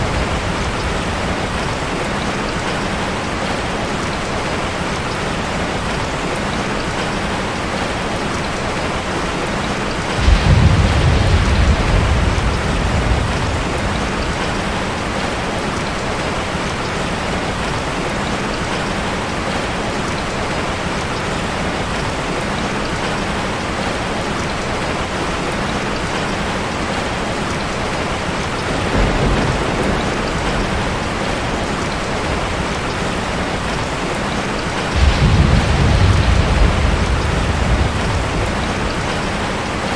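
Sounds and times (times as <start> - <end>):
low rumble of thunder: 0.0 - 2.8, 10.1 - 16.5, 28.6 - 39.9
heavy rainfall: 0.0 - 39.9.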